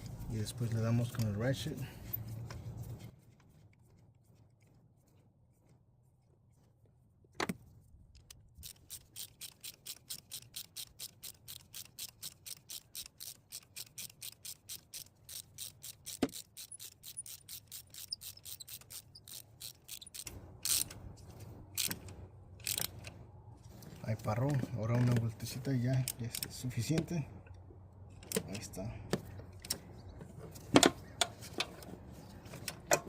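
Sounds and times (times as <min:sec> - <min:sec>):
socket ratchet clicking: 0:08.2 - 0:21.0, 0:21.8 - 0:23.2.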